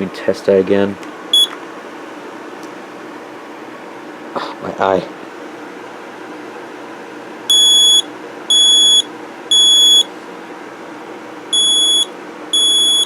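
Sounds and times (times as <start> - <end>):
smoke alarm beeping: 1.3 - 1.6, 7.5 - 10.1, 11.5 - 13.0.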